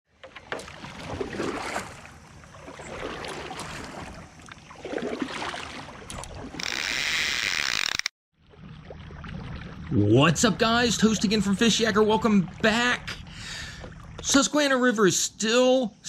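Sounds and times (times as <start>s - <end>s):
water splashing against kayak: 0.1s - 14.4s.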